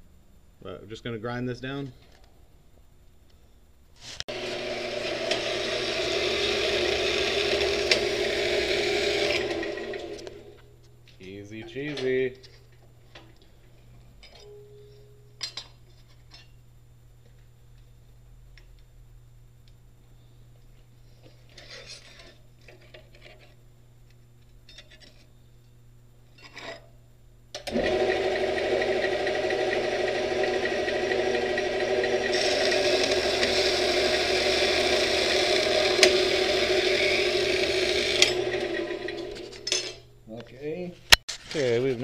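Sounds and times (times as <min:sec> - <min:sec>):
angle grinder grinding steel: 0:04.2 - 0:10.6, 0:27.7 - 0:40.1.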